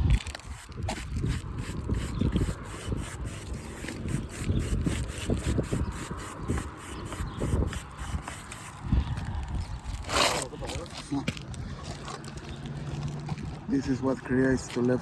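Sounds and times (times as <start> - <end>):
scuffing and rubbing noises: 6.2 - 15.0.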